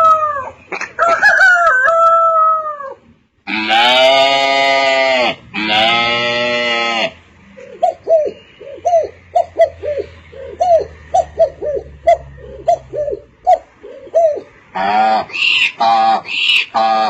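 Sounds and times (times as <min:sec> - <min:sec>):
dove cooing: 0:05.7 - 0:17.0.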